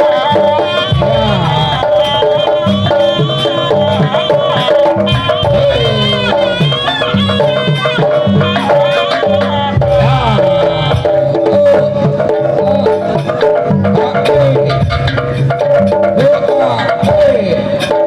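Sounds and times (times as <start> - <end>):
hand drums beating: 0.0 - 18.0
pitched melody line: 0.0 - 18.0.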